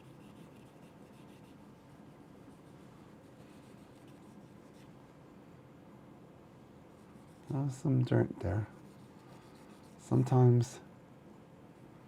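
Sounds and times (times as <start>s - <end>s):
soft rubbing and scratching: 0.0s - 5.2s, 6.9s - 10.7s
room hiss: 0.0s - 12.0s.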